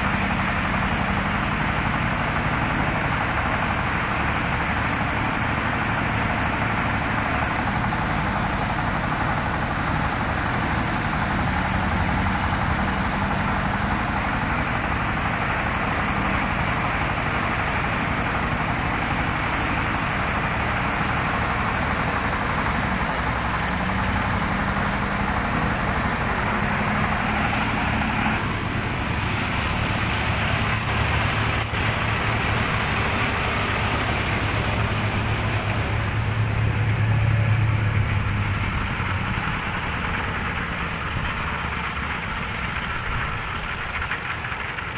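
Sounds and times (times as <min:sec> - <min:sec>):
threshing machine running: 0:00.0 - 0:44.9.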